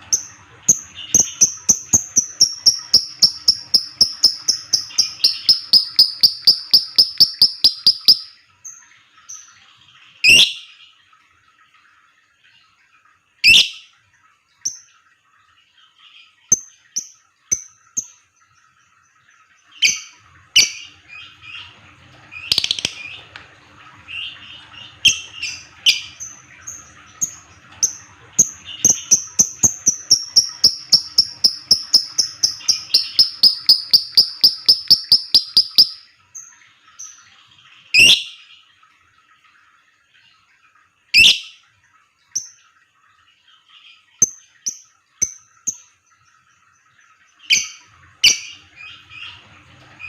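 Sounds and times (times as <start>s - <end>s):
rapid high bird chirps: 1.1s - 8.4s, 22.4s - 23.1s, 28.7s - 36.1s.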